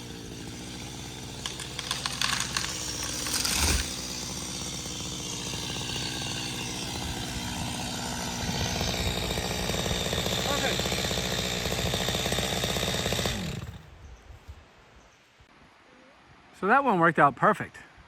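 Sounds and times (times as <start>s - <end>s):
chainsaw running: 0.0s - 13.9s
wood cracking: 0.4s - 13.8s
tree falling thud: 1.2s - 5.1s.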